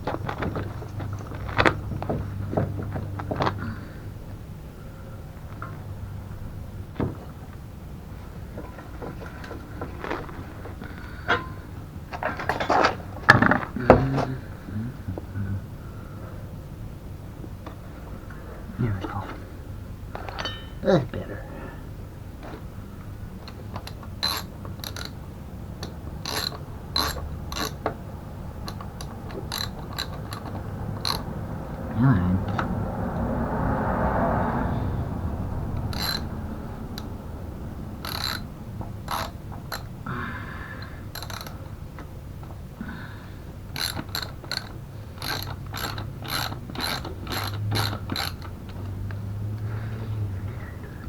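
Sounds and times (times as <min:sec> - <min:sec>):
steady low hum: 0:00.0 - 0:51.0
ratchet wrench clicking: 0:23.4 - 0:25.2, 0:25.8 - 0:31.3, 0:35.8 - 0:37.2, 0:38.0 - 0:40.0, 0:40.8 - 0:41.7, 0:43.7 - 0:49.2.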